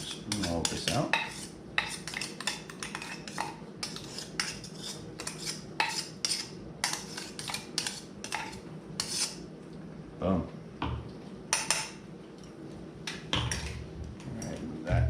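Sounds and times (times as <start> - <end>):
spoon scraping inside a cup: 0.0 - 9.4.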